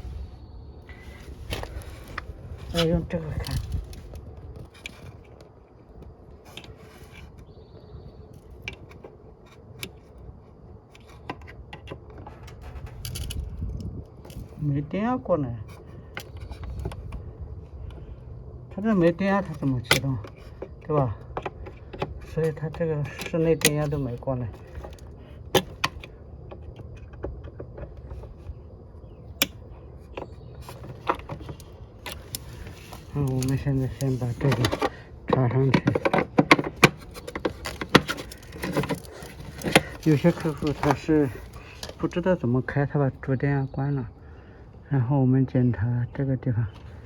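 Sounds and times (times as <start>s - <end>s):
low rumble: 0.0s - 4.7s
steady low rumble: 0.0s - 47.0s
tools clicking and tapping: 30.2s - 42.0s.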